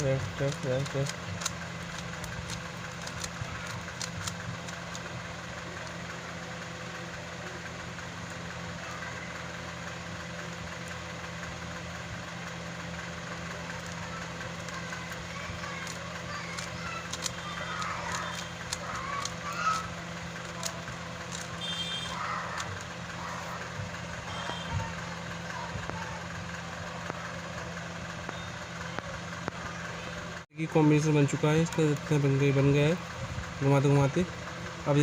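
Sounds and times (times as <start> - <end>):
steady mechanical hum: 0.0 - 35.0
puzzle cube layers clicking: 0.2 - 6.0, 13.7 - 19.8.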